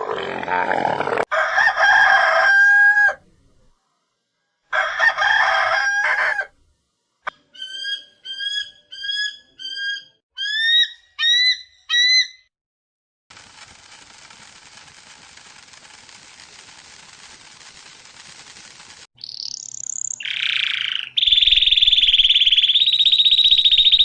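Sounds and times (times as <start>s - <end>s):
rooster crowing: 1.2s - 3.2s, 4.7s - 6.5s.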